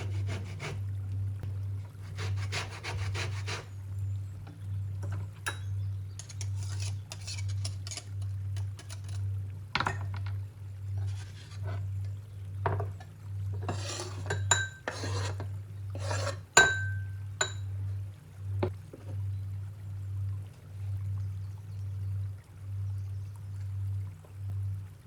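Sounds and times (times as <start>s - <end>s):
hard objects scraping: 6.2s - 9.2s, 11.0s - 12.1s, 13.6s - 16.5s.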